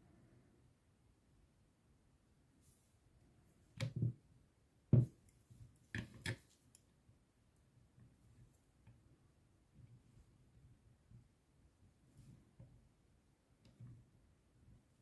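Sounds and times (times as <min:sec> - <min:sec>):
tools knocking on work surface: 0:05.0 - 0:05.2.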